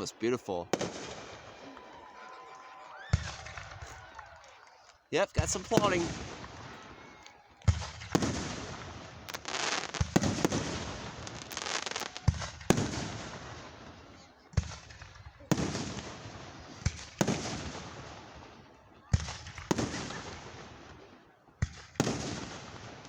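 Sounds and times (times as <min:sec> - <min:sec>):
firework shells bursting: 0:04.8 - 0:13.6.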